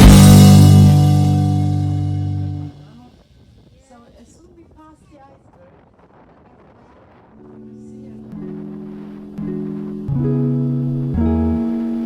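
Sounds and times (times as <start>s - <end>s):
plucked guitar chords with bass: 0.0s - 2.8s, 8.2s - 12.0s.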